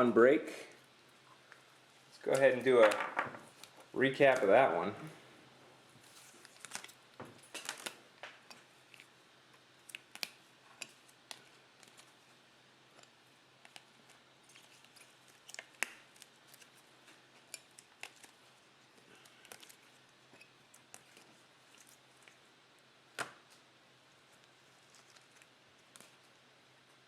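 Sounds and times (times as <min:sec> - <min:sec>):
cards clicking and rustling: 0:02.2 - 0:04.5, 0:06.1 - 0:09.1, 0:12.9 - 0:20.0.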